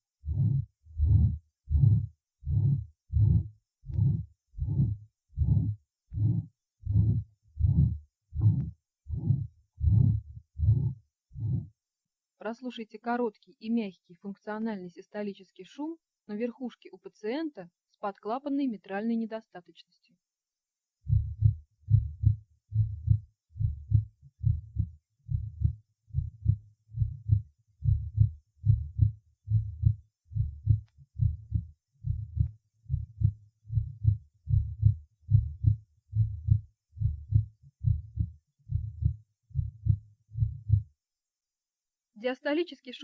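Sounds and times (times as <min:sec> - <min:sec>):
heartbeats with soft murmur: 0:00.2 - 0:11.8, 0:21.0 - 0:41.0.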